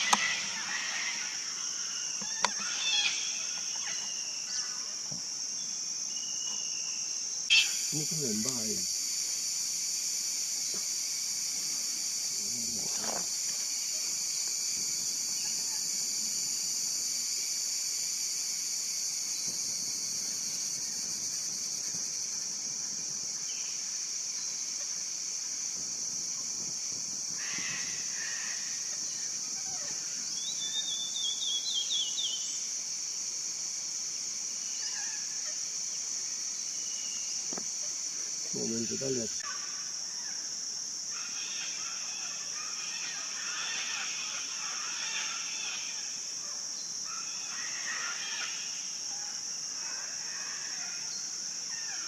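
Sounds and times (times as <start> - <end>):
faint bird calls: 0.0 - 5.0
insects droning: 0.0 - 52.0.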